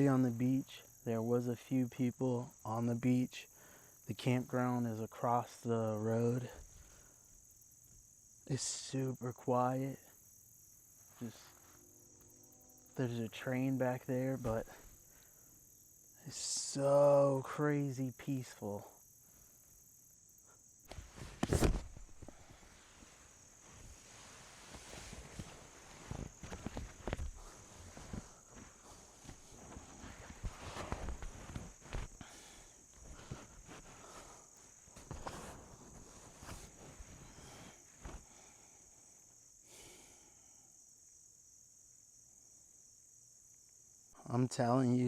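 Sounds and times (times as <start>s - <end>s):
insects chirring: 0.0s - 45.0s
rustle: 3.5s - 41.4s
footsteps outdoors: 20.8s - 38.3s.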